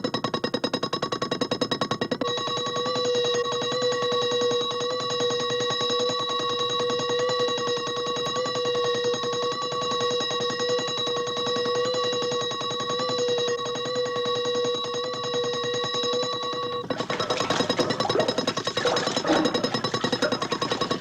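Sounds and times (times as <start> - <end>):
alarm clock bell ringing: 16.9 - 21.0.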